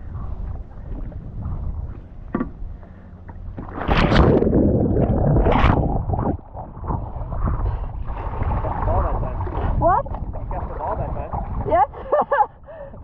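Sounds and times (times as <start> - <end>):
wind rumble on microphone: 0.0 - 13.0
water splashing and pouring: 3.6 - 11.8.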